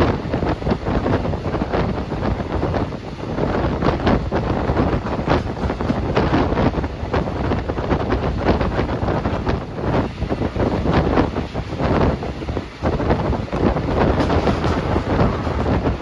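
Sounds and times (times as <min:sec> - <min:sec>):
moving train: 0:00.0 - 0:16.0
wind buffeting microphone: 0:00.0 - 0:16.0.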